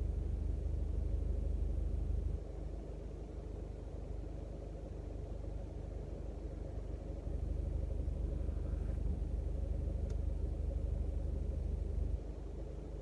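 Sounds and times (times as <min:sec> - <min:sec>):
car engine idling: 0:00.0 - 0:13.0
faint click: 0:10.0 - 0:10.3.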